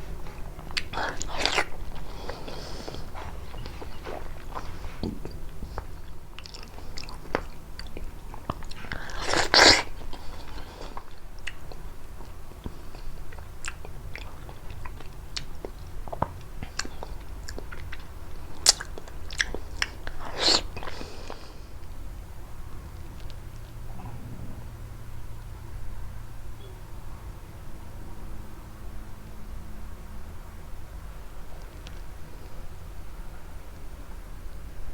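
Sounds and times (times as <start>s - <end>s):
biting and chewing fruit: 0.0s - 21.8s.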